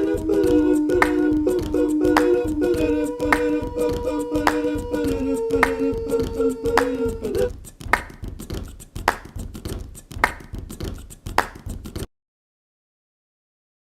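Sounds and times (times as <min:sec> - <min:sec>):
held vocal note: 0:00.0 - 0:07.6
percussive beat with sharp hits: 0:00.0 - 0:12.1.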